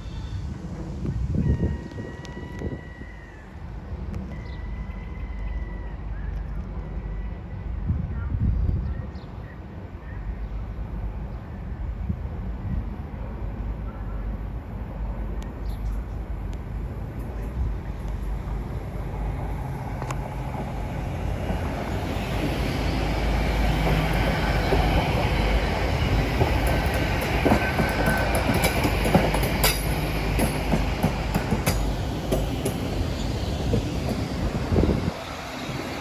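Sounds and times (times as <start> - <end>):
train rumbling: 0.0 - 36.0
wheels clicking over rail joints: 23.8 - 33.1.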